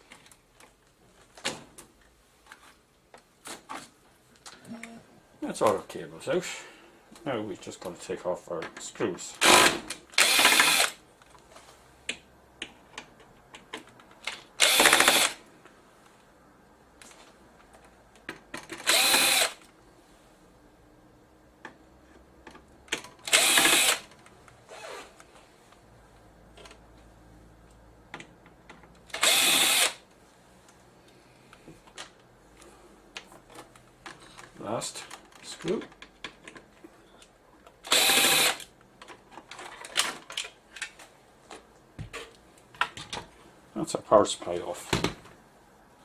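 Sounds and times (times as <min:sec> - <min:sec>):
electric screwdriver spinning: 0:10.2 - 0:11.0, 0:14.6 - 0:15.4, 0:18.8 - 0:19.6, 0:23.3 - 0:24.1, 0:29.2 - 0:30.0, 0:37.9 - 0:38.7.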